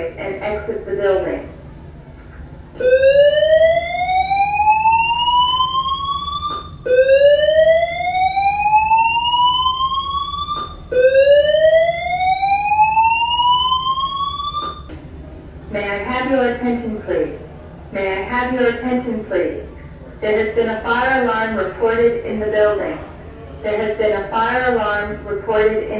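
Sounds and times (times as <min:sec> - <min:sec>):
fire alarm whoop tone: 0:02.8 - 0:14.9.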